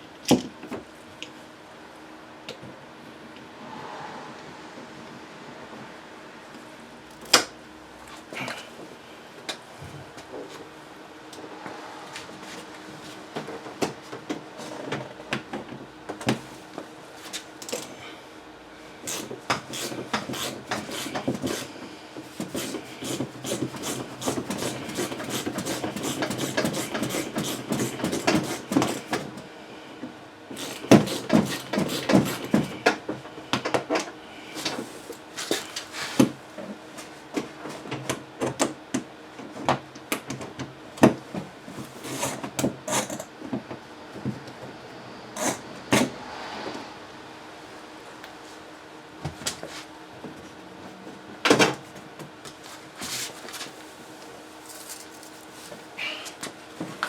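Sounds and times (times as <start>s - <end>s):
hand tools clicking and scraping: 19.0s - 21.7s, 22.4s - 29.4s, 30.5s - 33.0s.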